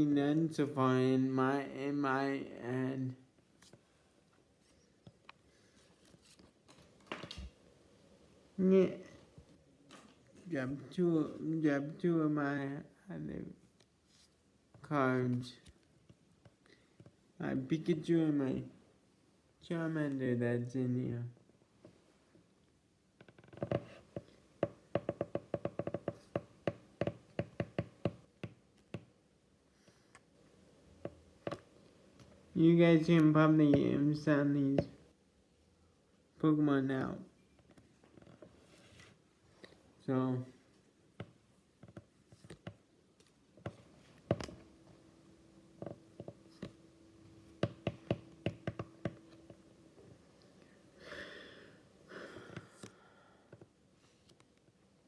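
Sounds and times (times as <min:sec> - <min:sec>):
cards rustling: 0:05.6 - 0:07.5
trading cards clicking and tapping: 0:47.6 - 0:49.6.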